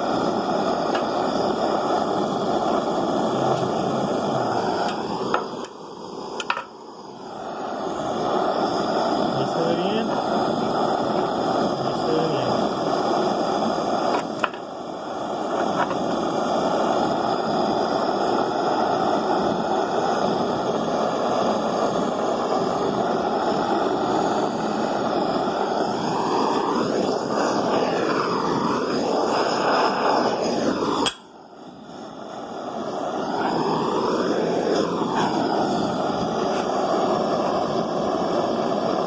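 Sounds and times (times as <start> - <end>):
torch click: 0.0 - 7.5, 12.6 - 14.8, 15.4 - 16.9, 25.7 - 32.0, 33.2 - 37.1
gas torch flame rushing: 0.0 - 39.0.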